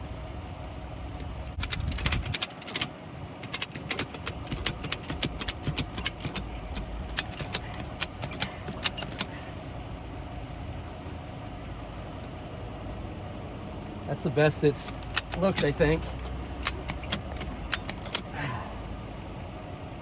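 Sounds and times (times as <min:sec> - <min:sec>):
ratchet strap metal clicks: 0:01.4 - 0:09.4, 0:14.8 - 0:18.4.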